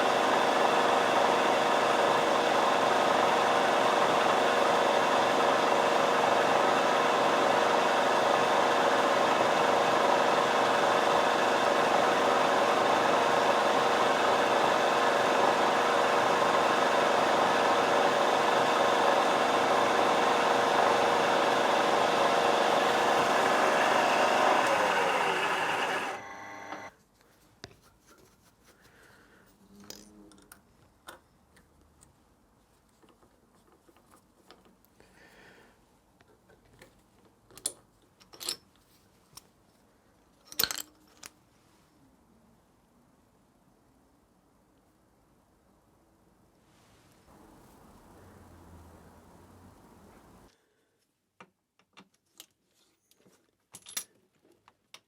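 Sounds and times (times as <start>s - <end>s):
machine winding down: 0.0s - 26.9s
workshop machine humming: 0.0s - 26.9s.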